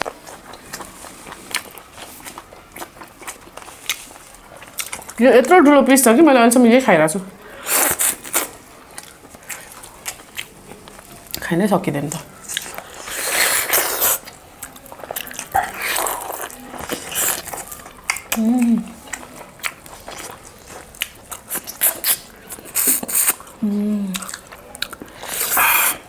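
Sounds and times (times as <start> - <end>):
meat being bitten and chewed: 0.0 - 5.2, 7.6 - 11.4, 12.3 - 26.0
person humming: 18.4 - 19.0, 23.6 - 24.2.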